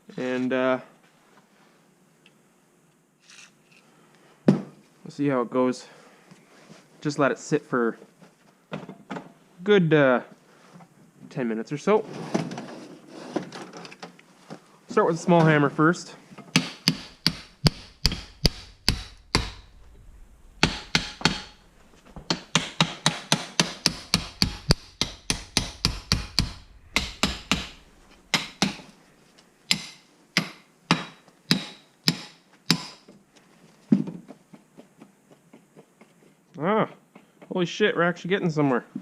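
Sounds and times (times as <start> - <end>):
hammer striking metal: 16.5 - 28.9, 29.7 - 33.0.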